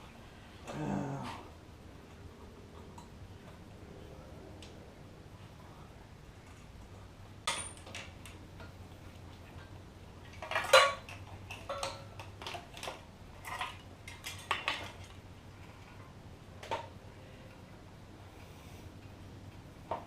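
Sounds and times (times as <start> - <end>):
faint steady hum: 0.0 - 20.0
metal tools clinking and clanking: 7.5 - 8.3, 10.3 - 15.2.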